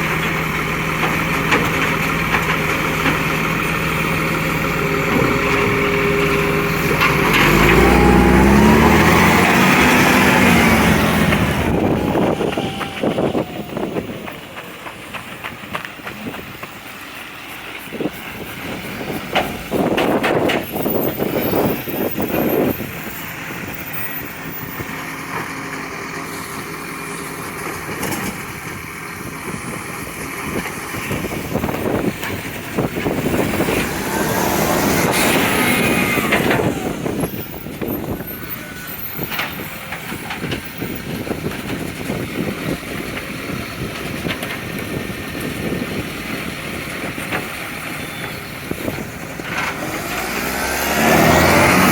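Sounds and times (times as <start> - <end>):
garbage truck engine revving: 0.0 - 51.9
rising and falling whine: 5.1 - 14.5.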